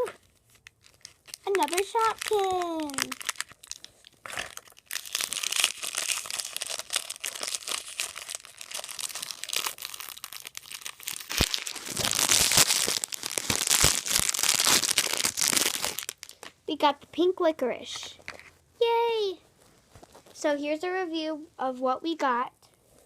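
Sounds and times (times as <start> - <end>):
plastic packaging crackling and tearing: 0.0 - 16.6.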